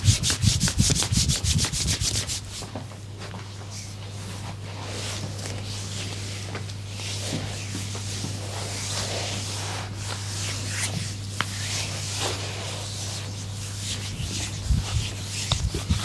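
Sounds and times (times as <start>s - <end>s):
hands rubbing over skin: 0.0s - 2.6s, 4.8s - 16.0s
low electrical hum: 0.0s - 16.0s.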